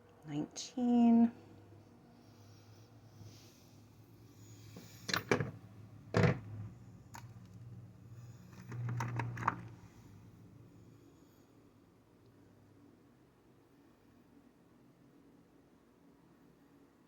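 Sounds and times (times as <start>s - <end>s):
metal sockets clicking on plastic: 8.5s - 9.8s.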